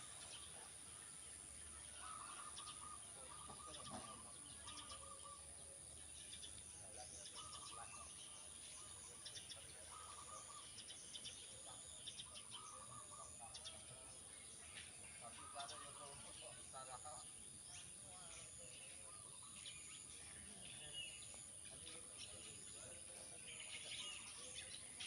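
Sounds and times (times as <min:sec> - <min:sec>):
faint outdoor ambience: 0:00.0 - 0:25.0
bird trilled calls: 0:01.4 - 0:05.6, 0:06.2 - 0:14.0.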